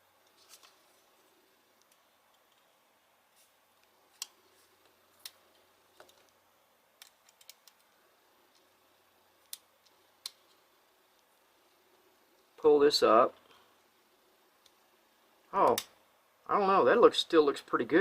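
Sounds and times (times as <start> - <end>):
small clicks and taps: 7.0 - 7.9.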